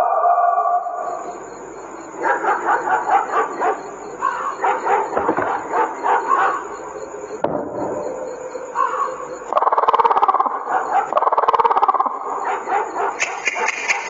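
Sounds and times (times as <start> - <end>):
animal yelping: 2.2 - 6.8, 8.7 - 14.0.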